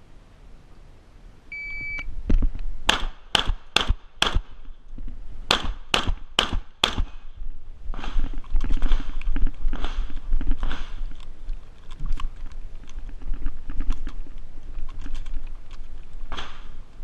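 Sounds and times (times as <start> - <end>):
shot timer beep: 1.5 - 2.1
shotgun shots: 2.9 - 4.6, 5.5 - 7.2.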